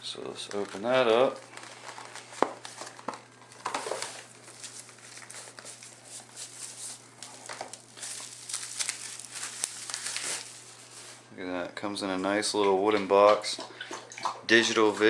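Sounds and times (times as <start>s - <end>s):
packaging crinkling and rustling: 0.2s - 11.3s.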